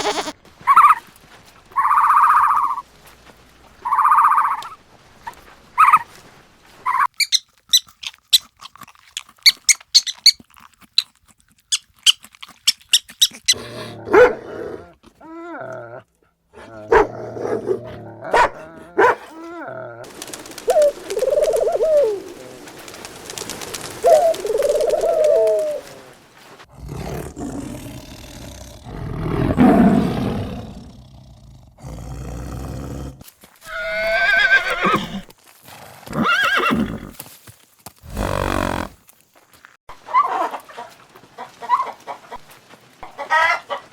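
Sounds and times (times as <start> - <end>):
farm animals calling: 0.0 - 1.0, 20.0 - 26.5, 38.0 - 39.0.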